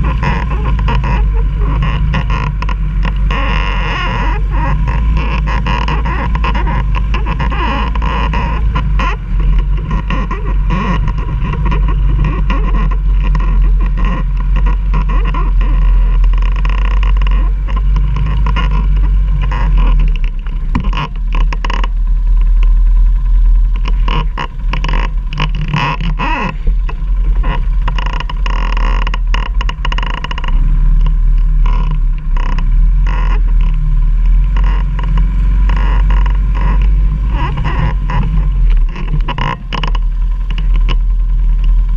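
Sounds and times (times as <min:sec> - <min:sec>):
knocks and rattles: 0:00.0 - 0:22.8
quad engine running: 0:00.0 - 0:41.9.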